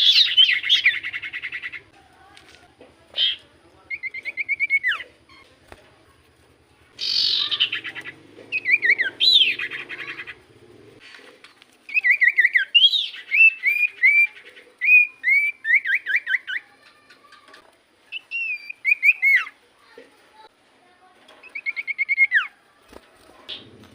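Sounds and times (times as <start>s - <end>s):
harsh buzzy bird call: 7.0s - 11.0s.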